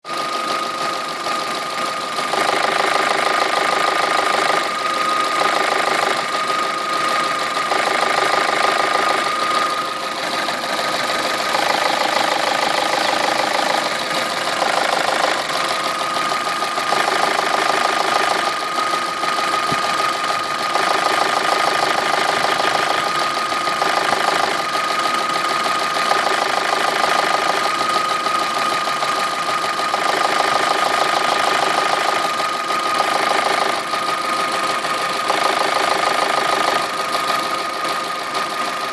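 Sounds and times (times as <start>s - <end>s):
car engine idling: 0.1s - 38.9s
gear knocking: 10.8s - 38.1s.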